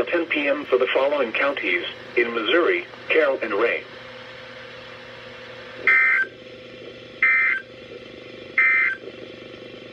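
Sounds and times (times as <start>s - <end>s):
faint radio hum: 0.0s - 4.0s.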